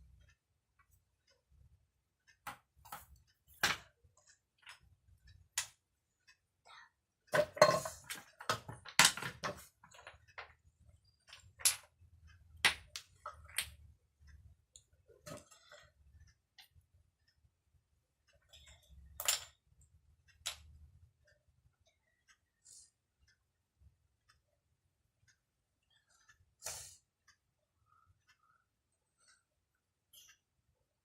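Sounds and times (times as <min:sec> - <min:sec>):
wooden toy blocks clacking: 0:07.3 - 0:10.6.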